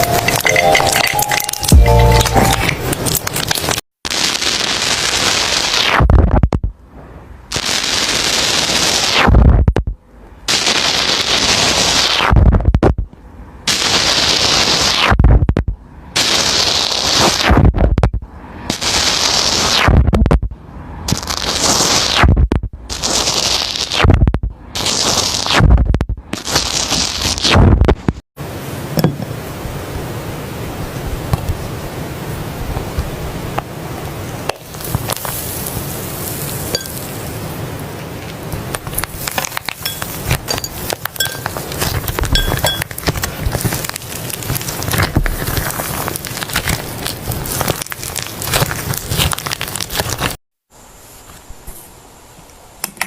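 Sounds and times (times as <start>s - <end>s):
high pings: 0.0s - 2.9s
slime squelching by hand: 38.8s - 50.4s.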